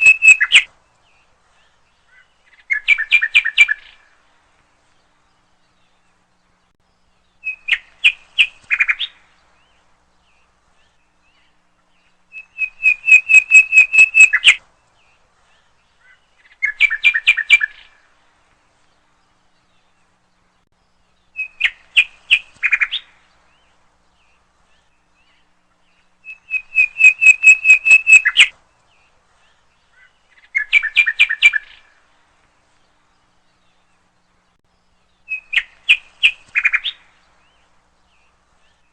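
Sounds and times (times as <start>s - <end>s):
bird whistling and trilling: 0.0s - 0.7s, 2.6s - 4.0s, 7.4s - 9.1s, 12.3s - 14.6s, 16.6s - 17.9s, 26.2s - 28.5s, 30.5s - 31.8s, 35.3s - 37.0s.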